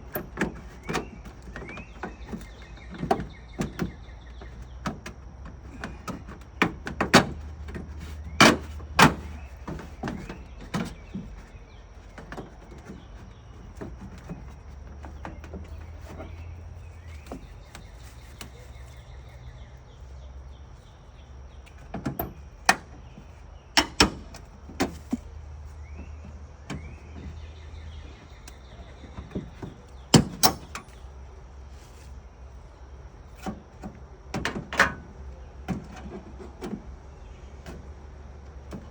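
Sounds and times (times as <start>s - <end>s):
tools knocking and clacking: 29.2s - 30.9s.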